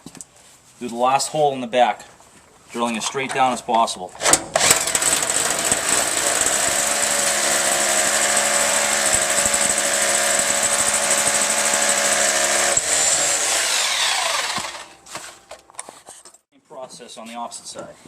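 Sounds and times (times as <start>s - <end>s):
hammer drill boring into concrete: 4.2s - 15.0s
drill motor winding down: 4.6s - 15.0s.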